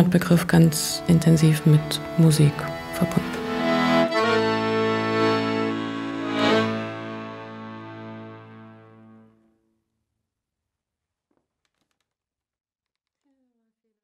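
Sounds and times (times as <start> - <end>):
accordion chord over bass note: 0.0 - 9.4.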